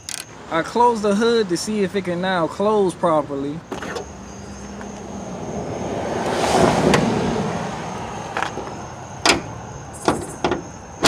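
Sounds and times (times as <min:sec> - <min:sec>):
sharp clicks and knocks: 0:08.4 - 0:10.7
car hood closing with click: 0:08.4 - 0:10.8.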